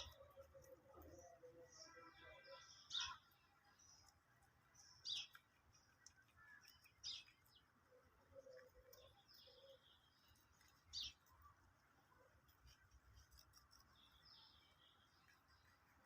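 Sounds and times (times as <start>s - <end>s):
sharp bird calls: 0.0s - 4.1s
soft bird twittering: 0.0s - 11.5s.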